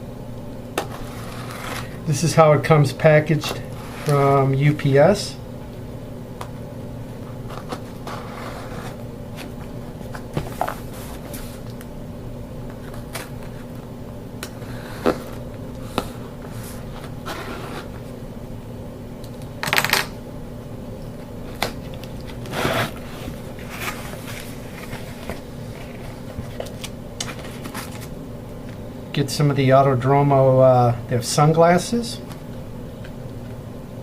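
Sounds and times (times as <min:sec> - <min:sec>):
steady low hum: 0:00.0 - 0:34.0
cardboard rustling and scraping: 0:00.8 - 0:02.0, 0:07.4 - 0:11.7, 0:12.7 - 0:13.8, 0:14.6 - 0:18.1, 0:21.8 - 0:28.1.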